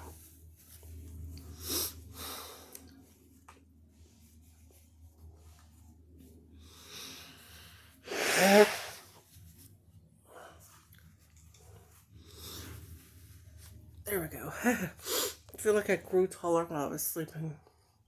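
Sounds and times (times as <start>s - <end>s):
person breathing noisily: 6.6s - 9.1s.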